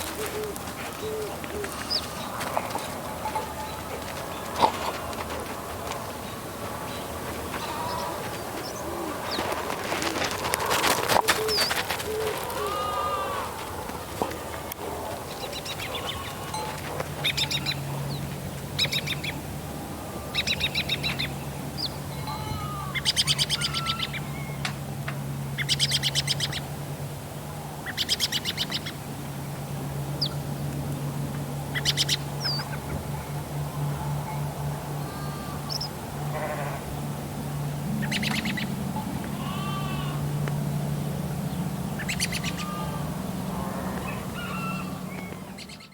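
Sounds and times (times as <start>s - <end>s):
birds making harsh calls: 0.0s - 19.4s, 20.0s - 24.7s, 31.7s - 37.0s, 38.0s - 40.4s, 41.5s - 45.9s
low steady hum: 0.0s - 45.9s
sheep bleating: 12.4s - 13.6s, 22.1s - 23.0s, 35.0s - 35.7s, 36.3s - 36.9s, 39.3s - 40.3s, 42.5s - 44.9s.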